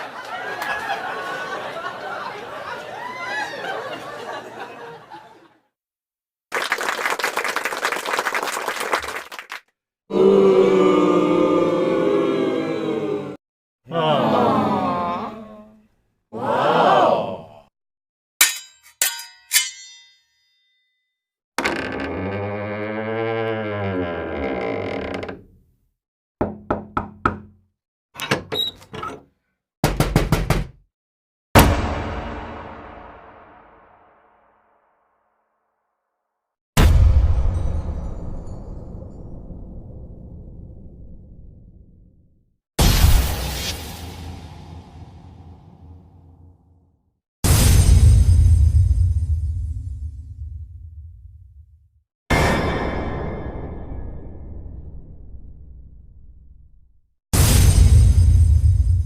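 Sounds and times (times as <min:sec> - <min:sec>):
crowd applauding: 0:00.0 - 0:05.0, 0:06.5 - 0:09.7
crowd booing: 0:00.0 - 0:05.1, 0:10.1 - 0:15.4, 0:16.4 - 0:17.4
crowd laughing: 0:00.0 - 0:05.7
door creaking: 0:21.6 - 0:25.6, 0:28.2 - 0:29.4
heavy angry pounding on door: 0:26.4 - 0:27.6, 0:29.8 - 0:30.8
knocking on wooden door: 0:26.4 - 0:27.6, 0:29.8 - 0:30.8
door latch clicking open: 0:28.2 - 0:29.3.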